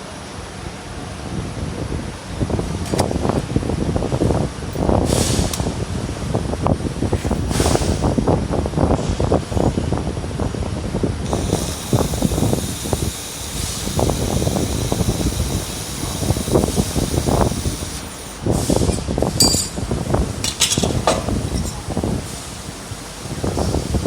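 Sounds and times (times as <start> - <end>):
low rumbling and rustling: 0.8 - 24.0
laser welder high hiss: 11.2 - 18.9.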